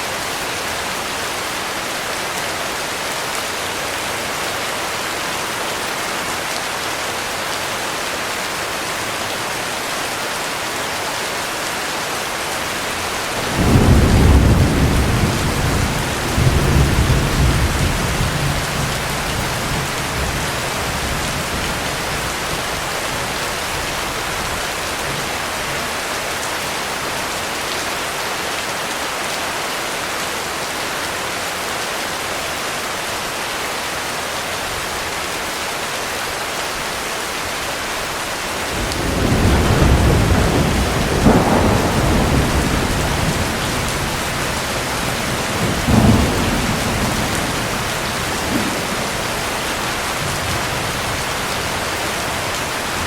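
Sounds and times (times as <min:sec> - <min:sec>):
heavy rain falling: 0:00.0 - 0:53.0
thunder rumbling: 0:13.4 - 0:23.3, 0:38.6 - 0:53.0.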